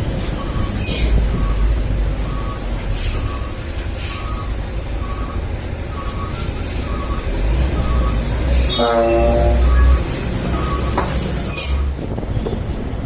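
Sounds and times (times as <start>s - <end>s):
diesel engine running: 0.0s - 13.0s
reversing beeper: 0.4s - 11.9s
air-brake hisses: 2.9s - 4.4s.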